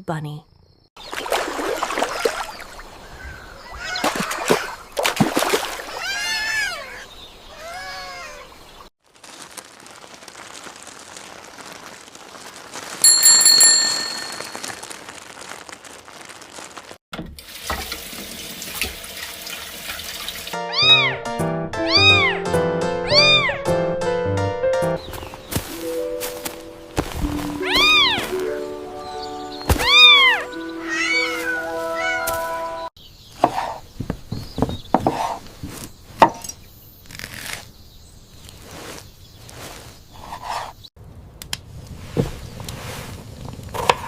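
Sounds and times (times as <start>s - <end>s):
cat meowing: 5.9s - 8.5s, 20.7s - 21.2s, 21.8s - 22.4s, 23.1s - 23.6s, 27.6s - 28.3s, 29.8s - 32.4s
bright chime: 13.0s - 15.0s
background music: 20.6s - 25.1s, 25.8s - 32.9s.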